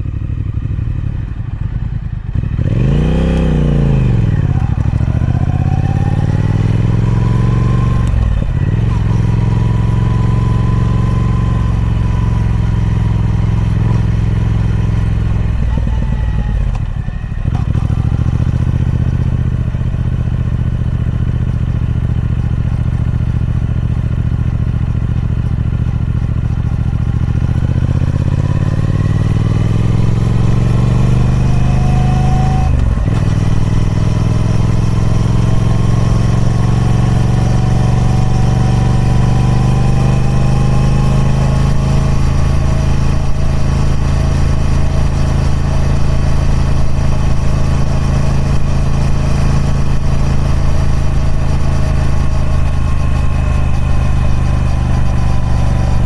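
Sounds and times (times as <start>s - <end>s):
motorcycle engine running: 0.0s - 56.0s.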